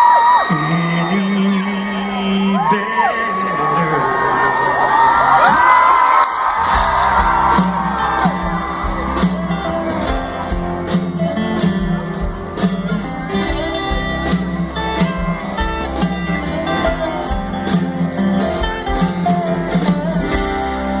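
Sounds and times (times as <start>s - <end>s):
electric and acoustic guitars: 5.4s - 21.0s
steady drum beat: 5.8s - 21.0s.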